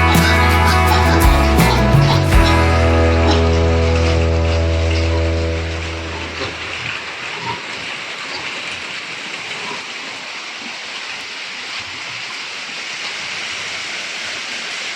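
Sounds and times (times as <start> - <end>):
heavy rain falling: 0.0 - 9.5.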